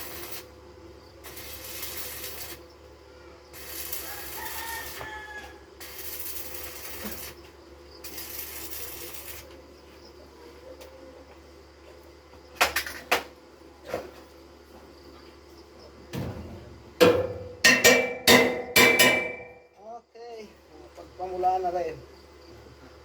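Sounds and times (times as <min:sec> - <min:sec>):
hiss: 0:00.0 - 0:00.5, 0:01.2 - 0:02.7, 0:03.5 - 0:05.2, 0:05.8 - 0:07.4, 0:08.0 - 0:09.5.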